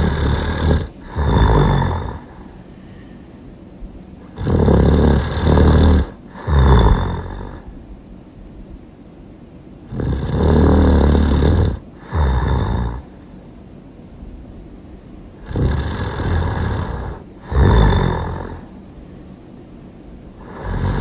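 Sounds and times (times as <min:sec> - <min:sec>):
person snoring loudly: 0:00.0 - 0:02.6, 0:04.2 - 0:07.7, 0:09.9 - 0:13.2, 0:15.4 - 0:18.7, 0:20.4 - 0:21.0.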